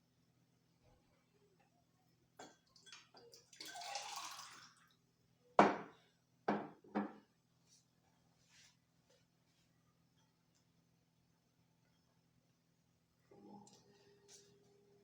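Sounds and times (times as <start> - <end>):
juice poured into a glass: 2.8 - 4.8.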